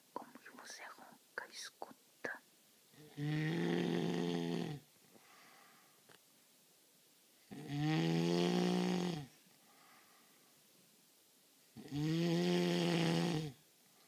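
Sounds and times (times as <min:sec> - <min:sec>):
person snoring loudly: 0:03.0 - 0:04.8, 0:07.5 - 0:09.3, 0:11.8 - 0:13.6
soft breaths: 0:05.0 - 0:06.3, 0:09.3 - 0:10.8.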